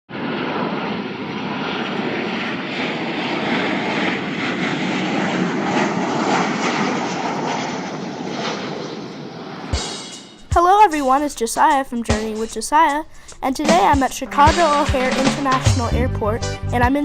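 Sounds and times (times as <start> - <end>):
airliner engines rushing: 0.1 - 12.2.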